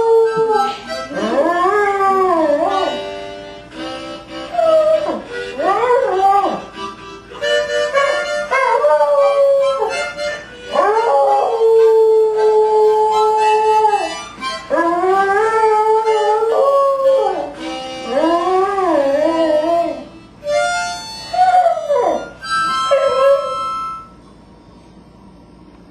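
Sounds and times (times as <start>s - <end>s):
dog howling: 0.0s - 3.3s, 4.4s - 6.9s, 7.7s - 20.1s, 21.3s - 24.1s
music: 0.0s - 24.2s.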